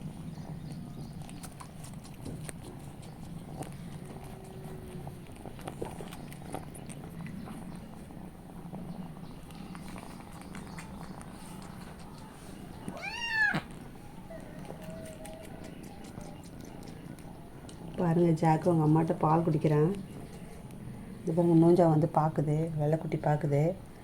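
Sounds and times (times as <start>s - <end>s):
cat purring: 0.0s - 24.0s
small clicks and smacks: 1.2s - 7.9s, 13.6s - 18.0s.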